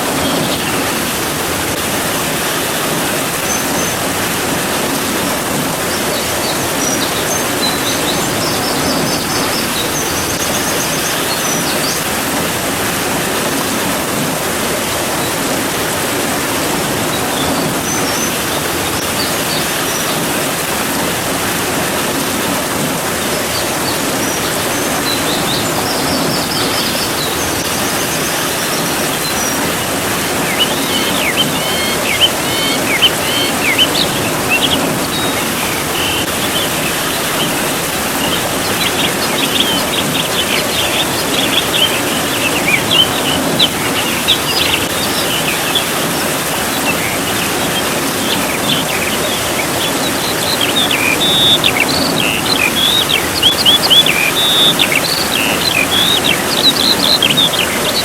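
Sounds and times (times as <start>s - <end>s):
birds chirping: 0.0s - 58.0s
steady rain: 0.0s - 58.0s.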